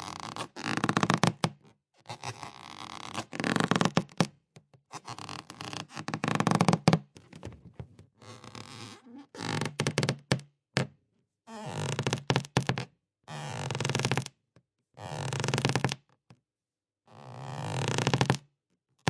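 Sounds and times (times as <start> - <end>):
rubber balloon squeaking: 0.0 - 4.3, 4.9 - 7.1, 8.2 - 10.2, 17.4 - 18.4.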